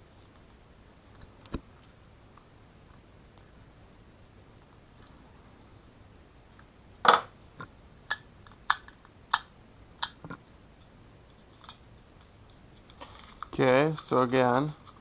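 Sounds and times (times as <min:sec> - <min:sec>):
small hard parts clicking and tapping: 0:11.2 - 0:15.0.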